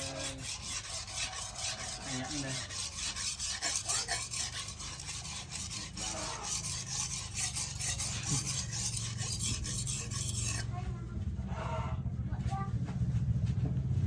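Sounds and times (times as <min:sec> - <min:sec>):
knife scraping on sharpening stone: 0:00.0 - 0:10.7.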